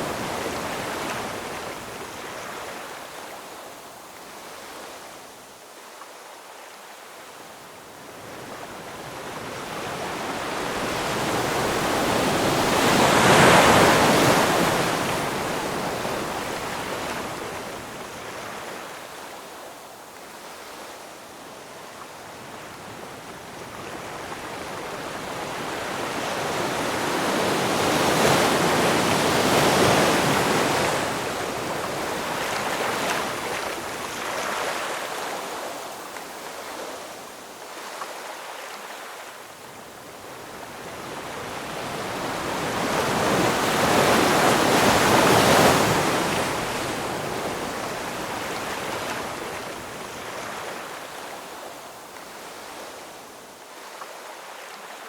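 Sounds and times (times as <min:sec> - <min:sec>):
ocean waves washing: 0:40.3 - 0:52.8.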